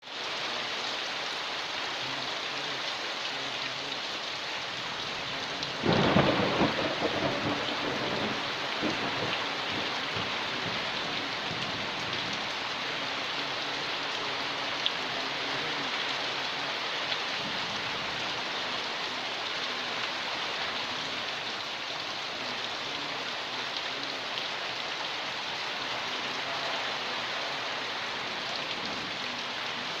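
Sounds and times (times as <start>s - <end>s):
heavy rain on a porch: 0.0s - 30.0s
thunderclap rolling into rumbling: 5.8s - 10.8s.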